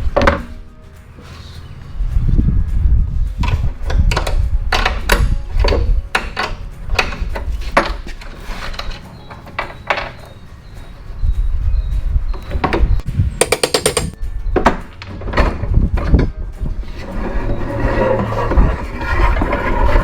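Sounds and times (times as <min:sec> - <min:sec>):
metallic clanks and knocks: 0:13.4 - 0:16.4.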